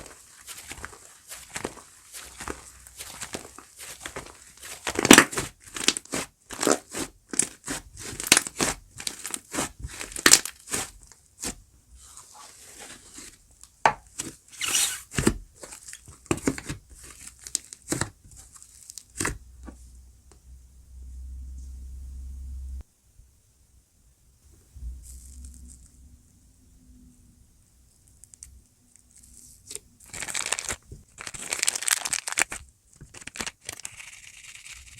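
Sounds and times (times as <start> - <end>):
slime squelching and popping: 0.0 - 11.6.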